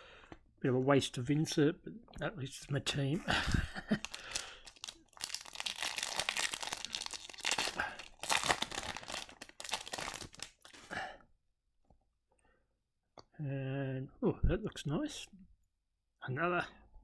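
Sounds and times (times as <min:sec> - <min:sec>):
plastic wrapper crinkling: 0:03.9 - 0:10.9.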